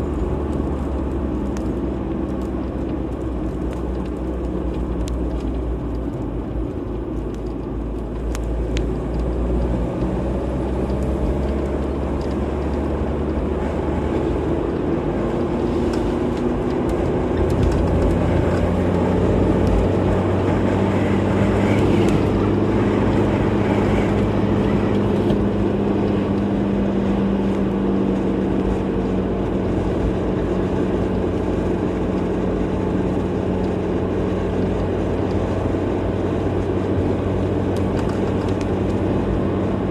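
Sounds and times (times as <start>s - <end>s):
car engine hum: 0.0s - 39.9s
tyre and road noise: 0.0s - 39.9s.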